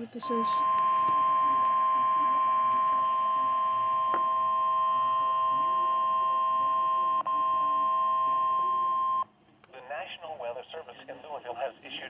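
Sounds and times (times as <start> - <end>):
electronic alarm tone: 0.2 - 9.2.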